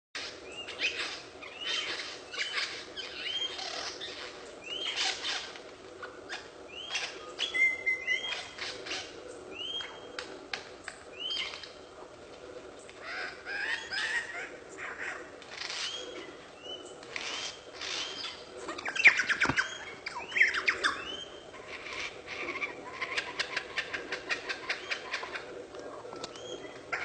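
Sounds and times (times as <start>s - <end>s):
bird chirping: 13.0s - 25.5s.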